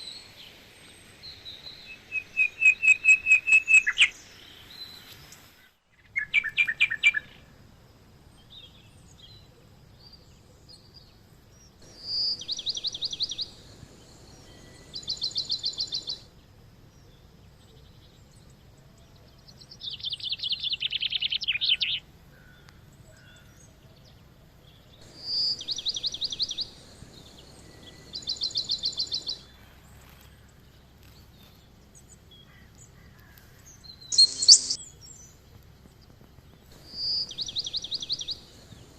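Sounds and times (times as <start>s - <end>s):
songbirds trilling: 8.3s - 38.9s.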